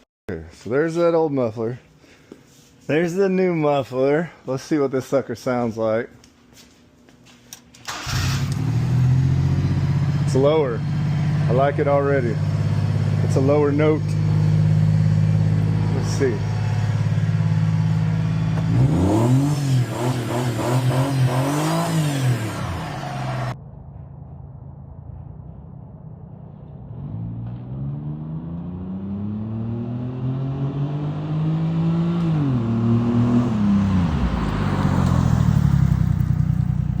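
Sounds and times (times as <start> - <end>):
car engine idling and revving: 7.9 - 23.6, 26.4 - 37.0.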